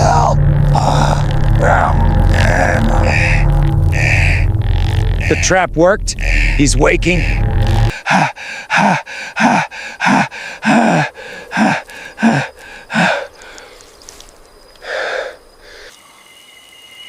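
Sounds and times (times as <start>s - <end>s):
person gasping for breath: 7.9s - 13.8s, 14.8s - 15.9s
long breath: 8.3s - 13.9s, 14.8s - 16.0s.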